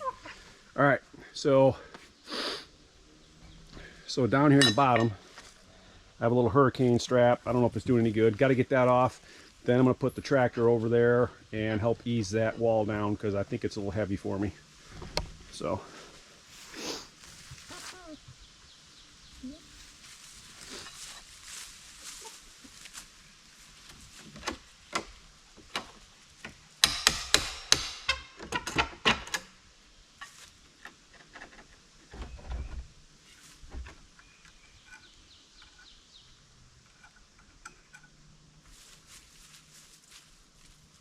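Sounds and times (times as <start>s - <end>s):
hand tools knocking on wood: 26.8s - 28.3s.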